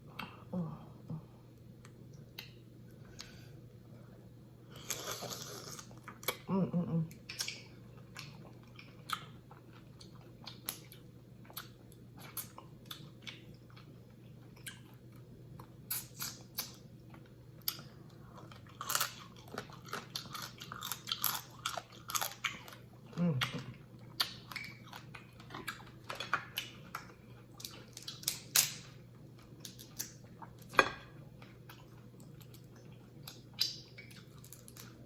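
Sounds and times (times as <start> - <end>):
wet chewing and smacking: 7.1 - 30.8, 31.4 - 35.0.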